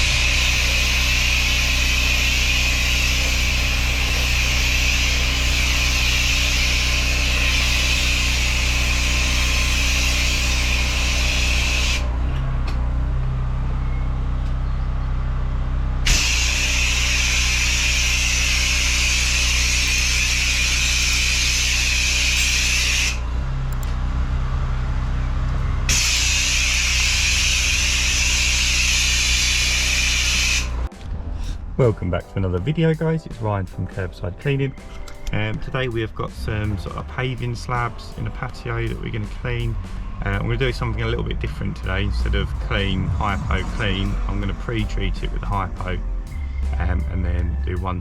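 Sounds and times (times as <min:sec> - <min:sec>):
pressure washer spray hissing: 0:00.0 - 0:12.2, 0:16.1 - 0:23.3, 0:25.9 - 0:30.9
motor humming: 0:00.0 - 0:30.9.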